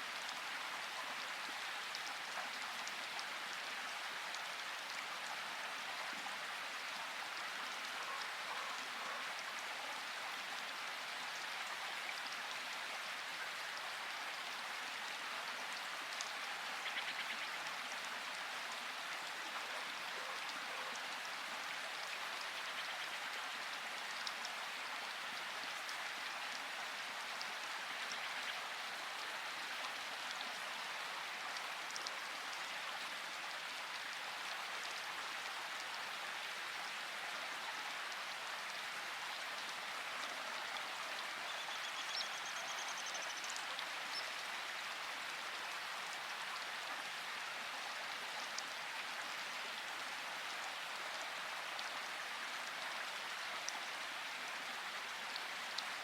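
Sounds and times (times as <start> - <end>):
steady rain hiss: 0.0 - 56.0
raindrops ticking on a surface: 15.4 - 19.4, 21.9 - 28.6.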